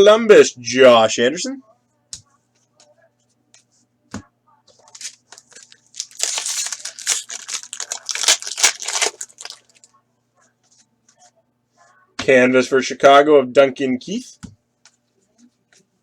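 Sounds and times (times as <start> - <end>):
cards rustling: 4.8 - 9.8
foil wrapper tearing and crinkling: 5.0 - 9.8.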